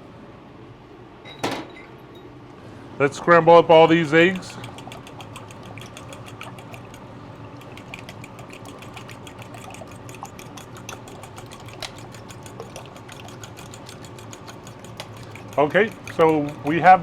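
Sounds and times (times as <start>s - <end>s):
eggs beaten in a bowl: 3.6s - 17.0s.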